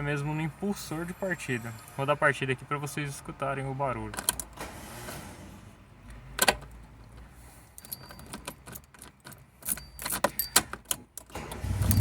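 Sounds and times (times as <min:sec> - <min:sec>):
car starter clicking: 0:10.1 - 0:12.0.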